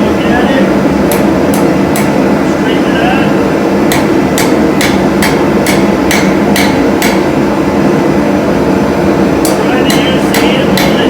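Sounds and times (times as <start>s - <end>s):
hammer striking hot steel: 1.1s - 2.3s, 3.8s - 7.4s, 9.4s - 11.0s.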